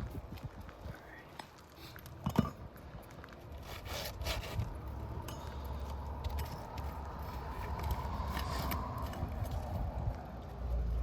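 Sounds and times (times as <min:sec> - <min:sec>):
tools scraping on shingles: 0:03.5 - 0:09.6
steady low rumble: 0:04.6 - 0:11.0.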